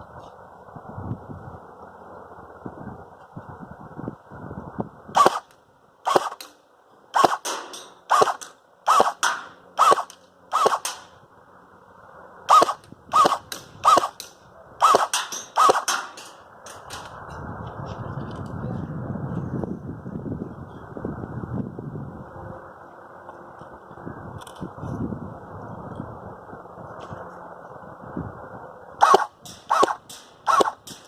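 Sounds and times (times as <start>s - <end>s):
airsoft gun firing single shots: 5.2s - 5.5s, 6.1s - 11.1s, 12.5s - 17.0s, 29.0s - 31.0s.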